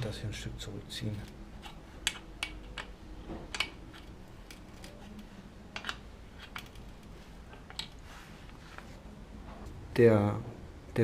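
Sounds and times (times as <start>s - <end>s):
faint steady hum: 0.0s - 11.0s
metallic tool clicks and taps: 1.6s - 2.9s, 3.5s - 4.6s.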